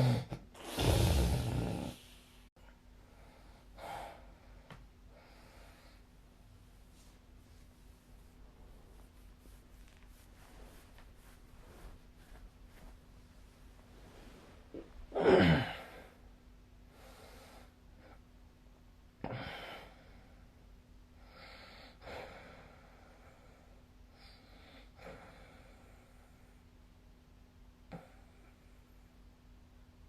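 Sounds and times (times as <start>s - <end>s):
person snoring: 0.0s - 2.2s
faint breaths: 0.6s - 6.3s.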